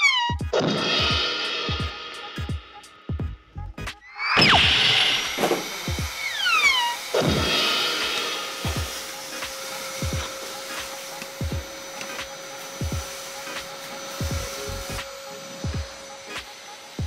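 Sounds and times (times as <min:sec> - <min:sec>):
vacuum cleaner running: 0:04.4 - 0:17.0.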